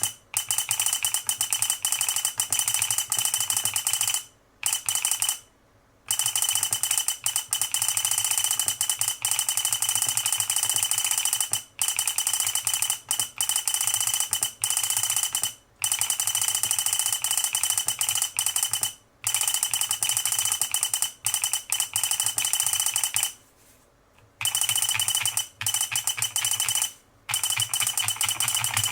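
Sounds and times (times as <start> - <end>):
keyboard keys clacking: 24.4 - 28.9.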